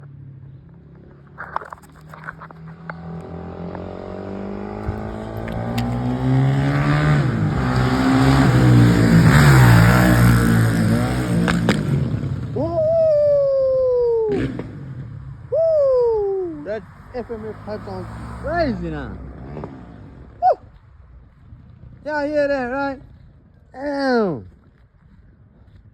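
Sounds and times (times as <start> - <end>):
dirt bike throttle blips: 0.0 - 25.9
dirt bike engine revving: 2.6 - 12.9, 16.7 - 20.4.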